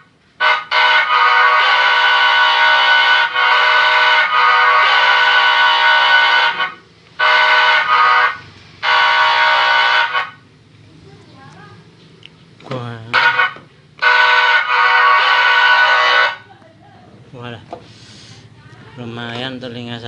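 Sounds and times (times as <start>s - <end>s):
electronic train horn blasts: 0.0s - 10.5s, 13.1s - 16.5s.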